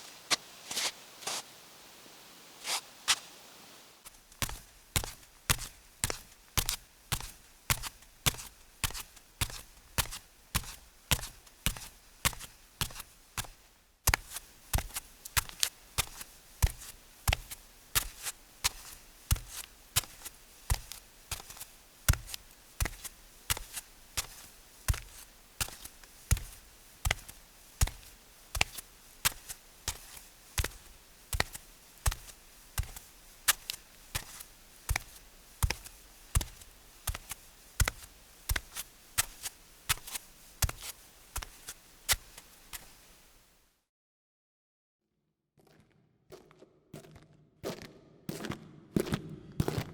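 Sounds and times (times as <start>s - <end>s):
footsteps tapping: 4.0s - 43.2s.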